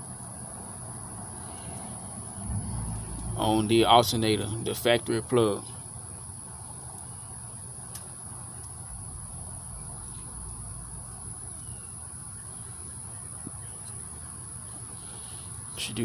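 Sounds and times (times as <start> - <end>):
crickets trilling: 0.2 - 16.0
low background hum: 2.4 - 6.0, 8.5 - 14.0.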